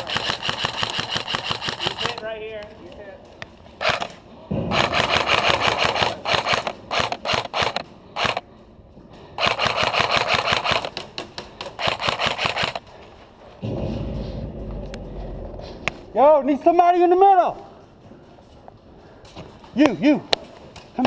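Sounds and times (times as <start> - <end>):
airsoft guns firing bursts: 0.0 - 2.3, 3.8 - 8.4, 9.4 - 12.8.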